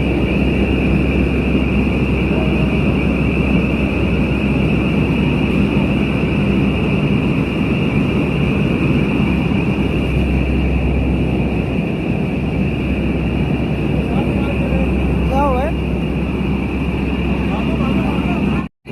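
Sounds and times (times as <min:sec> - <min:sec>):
steady low rumble: 0:00.0 - 0:18.9.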